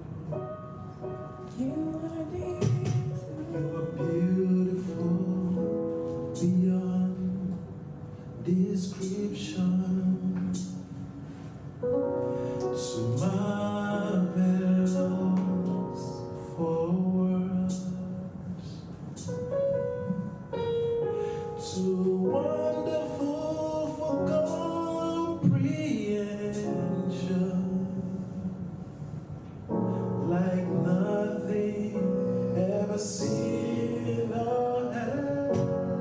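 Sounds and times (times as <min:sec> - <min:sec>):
soft musical accompaniment: 0:00.0 - 0:36.0
person singing long held notes: 0:01.4 - 0:07.6.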